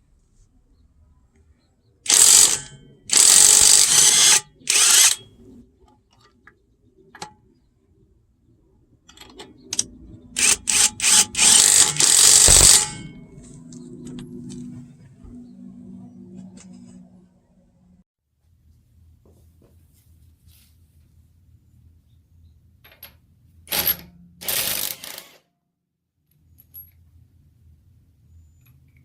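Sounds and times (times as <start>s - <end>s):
impact wrench bursts: 2.1s - 5.2s, 9.8s - 13.3s, 23.8s - 25.4s.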